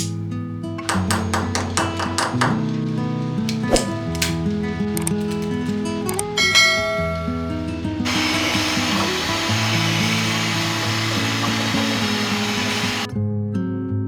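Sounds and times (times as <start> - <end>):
guitar music: 0.0 - 13.1
rushing hiss-like noise: 7.5 - 13.1.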